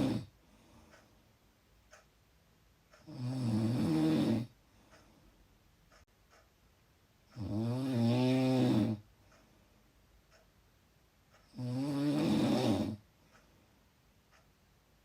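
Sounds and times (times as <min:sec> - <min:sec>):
loud snoring: 0:00.0 - 0:00.3, 0:03.0 - 0:04.6, 0:07.4 - 0:09.0, 0:11.5 - 0:13.0.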